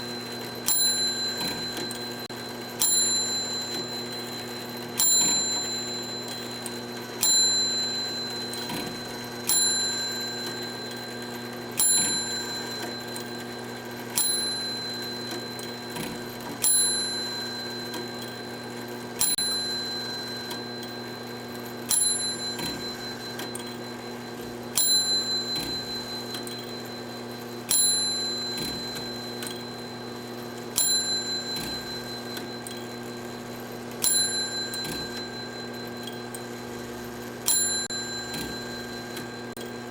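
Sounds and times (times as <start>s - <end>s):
small bell ringing: 0.1s - 16.0s, 16.6s - 18.6s, 19.2s - 30.0s, 30.8s - 36.8s, 37.4s - 39.9s.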